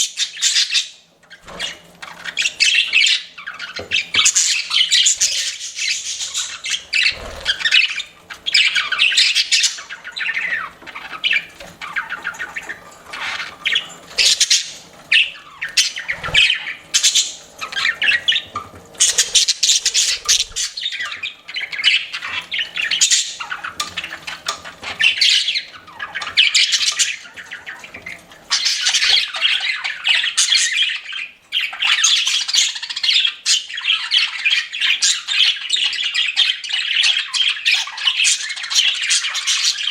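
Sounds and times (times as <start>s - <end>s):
budgerigars chattering: 0.0s - 39.9s.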